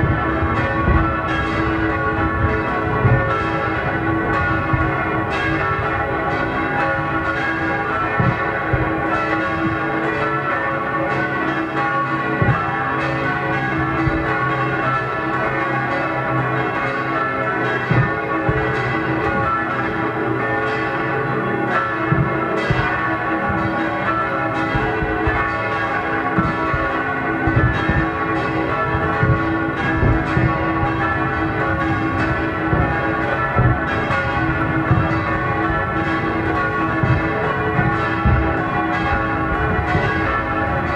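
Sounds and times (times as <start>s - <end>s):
church bells pealing: 0.0s - 40.9s
firework bangs and pops: 22.0s - 40.9s.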